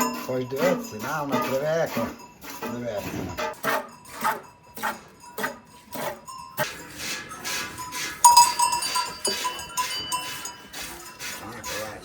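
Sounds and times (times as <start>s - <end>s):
sheep bells clanking: 0.0s - 12.0s
bell ringing out clearly: 3.9s - 6.7s, 7.3s - 11.2s.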